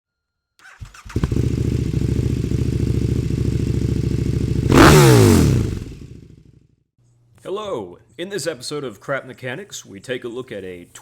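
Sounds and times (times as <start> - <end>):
motorcycle engine idling: 1.0 - 6.6.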